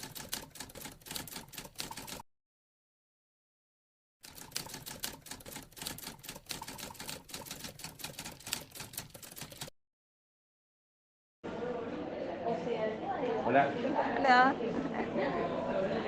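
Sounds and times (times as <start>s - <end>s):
rapid keyboard typing: 0.0s - 2.2s, 4.2s - 9.7s.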